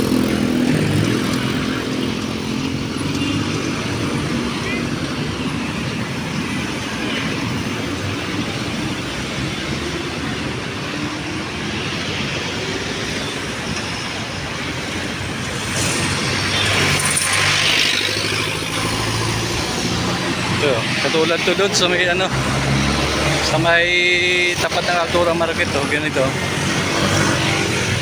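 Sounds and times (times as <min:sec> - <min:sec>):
city road traffic: 0:00.0 - 0:28.0
vehicle passing close: 0:15.0 - 0:28.0.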